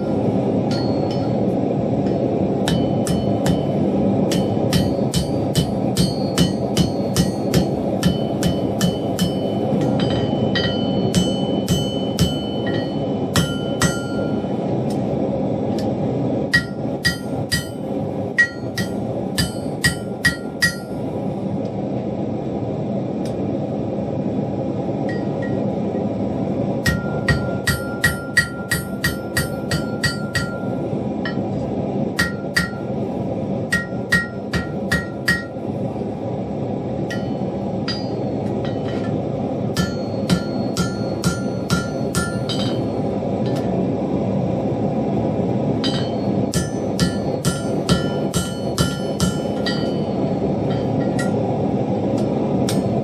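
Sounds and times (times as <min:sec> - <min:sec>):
hammer striking steel on anvil: 0:00.0 - 0:15.1, 0:16.5 - 0:21.0, 0:25.0 - 0:25.6, 0:26.8 - 0:33.0, 0:33.7 - 0:35.6, 0:37.1 - 0:43.7, 0:45.8 - 0:51.5, 0:52.2 - 0:53.0
steady rushing noise: 0:00.0 - 0:53.0.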